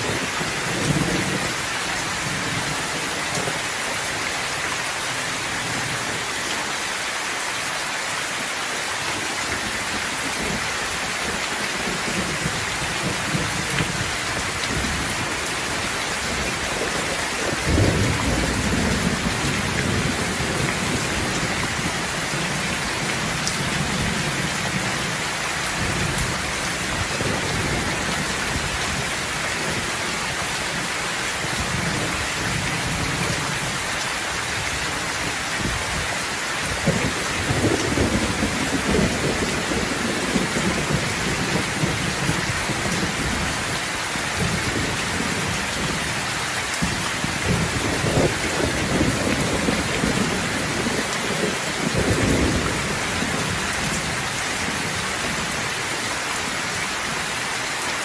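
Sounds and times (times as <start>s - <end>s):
thunder rumbling: 0.0s - 3.6s, 10.4s - 29.9s, 36.7s - 55.6s
heavy rain: 0.0s - 58.0s.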